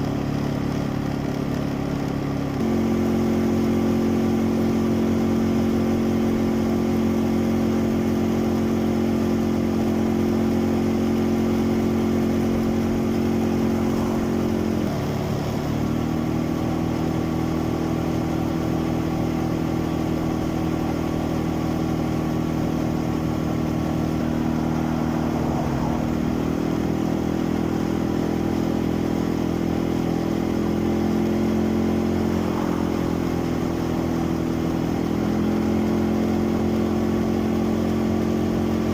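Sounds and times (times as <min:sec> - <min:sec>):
quad bike engine running: 0:00.0 - 0:38.9.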